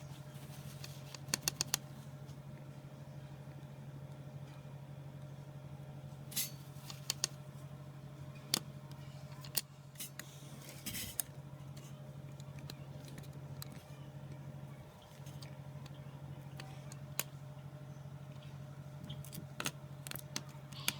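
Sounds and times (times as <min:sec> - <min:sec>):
steady low hum: 0:00.0 - 0:20.9.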